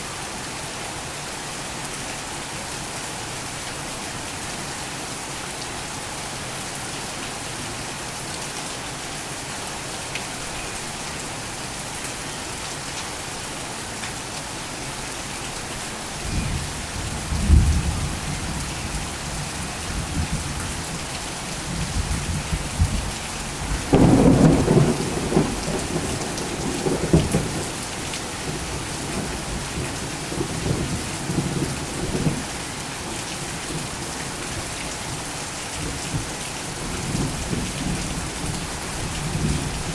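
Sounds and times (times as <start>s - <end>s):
heavy rain falling: 0.0s - 39.9s
thunder rumbling: 16.3s - 18.6s, 21.8s - 27.7s.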